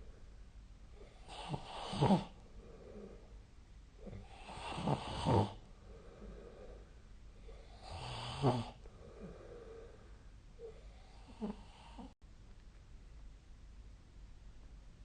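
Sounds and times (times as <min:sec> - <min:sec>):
person snoring: 0:01.1 - 0:03.2, 0:04.0 - 0:06.8, 0:07.5 - 0:10.0, 0:10.6 - 0:12.2.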